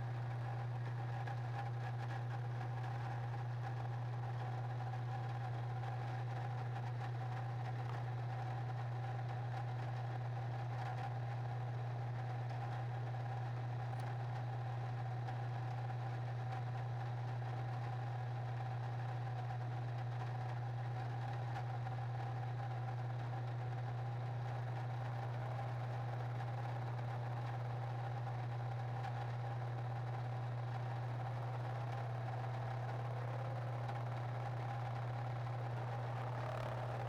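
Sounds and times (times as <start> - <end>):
machine hum with high tone: 24.1 - 37.0.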